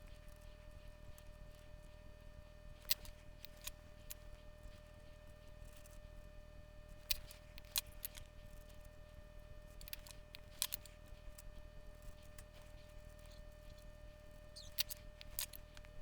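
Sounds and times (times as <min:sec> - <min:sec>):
faint steady hum: 0:00.0 - 0:16.0
small hand tools clicking: 0:14.6 - 0:15.9.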